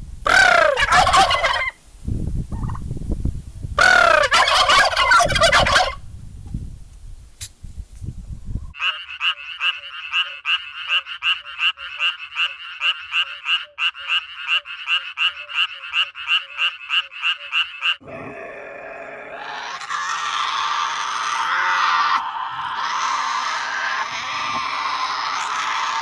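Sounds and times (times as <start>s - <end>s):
frog croaking: 0.3s - 1.7s, 3.8s - 6.0s, 8.8s - 26.0s
harsh noisy animal sound: 0.3s - 1.7s, 3.8s - 6.0s, 17.8s - 26.0s.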